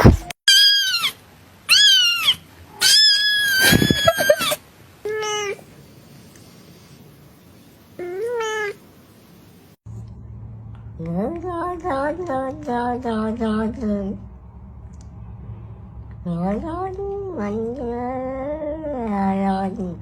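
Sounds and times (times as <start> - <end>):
cat meowing: 0.5 - 5.7, 8.0 - 8.8.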